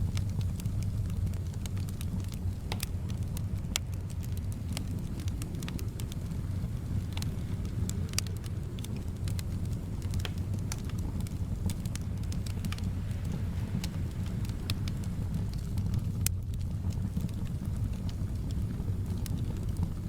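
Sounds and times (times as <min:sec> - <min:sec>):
soft wind rumble: 0:00.0 - 0:20.0
wood fire crackling: 0:00.0 - 0:20.0.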